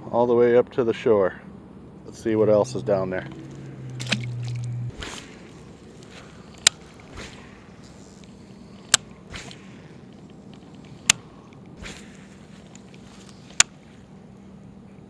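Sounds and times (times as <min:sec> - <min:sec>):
soft rustling: 0:04.3 - 0:14.3
sharp clicks: 0:06.0 - 0:12.1, 0:12.7 - 0:13.8.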